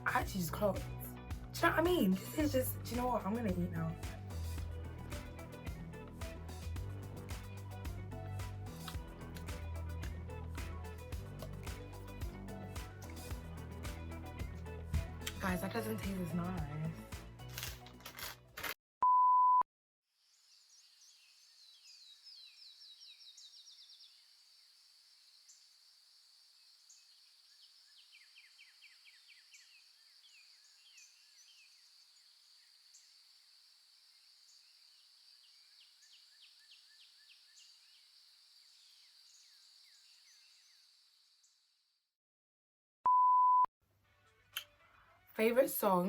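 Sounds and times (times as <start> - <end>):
electronic bleep: 43.1 - 43.7.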